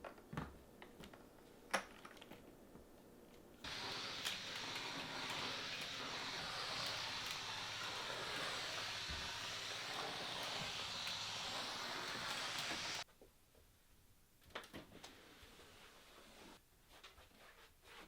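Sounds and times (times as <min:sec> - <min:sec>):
steady rushing noise: 0:03.7 - 0:13.0.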